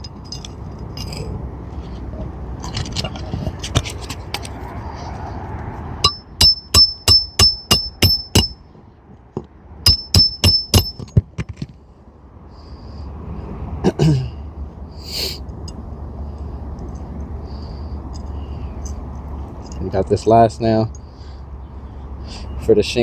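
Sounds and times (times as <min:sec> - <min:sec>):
scraping sounds: 0:00.0 - 0:05.9.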